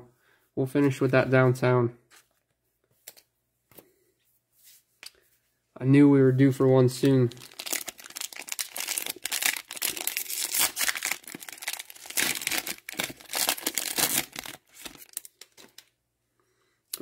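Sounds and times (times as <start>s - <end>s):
wrapper tearing and crinkling: 7.3s - 15.9s.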